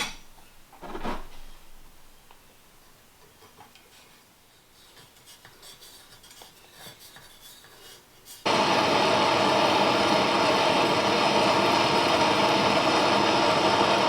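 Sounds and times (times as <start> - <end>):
loud steady rushing noise: 8.5 - 14.0.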